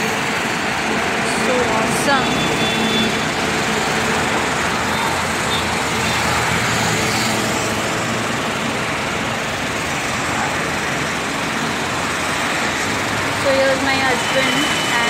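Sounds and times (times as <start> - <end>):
vehicle road noise rumble: 0.0 - 15.0.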